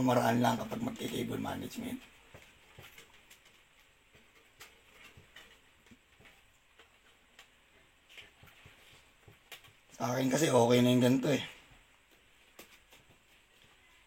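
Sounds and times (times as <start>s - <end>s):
faint clicks and taps of cables: 2.0s - 10.0s.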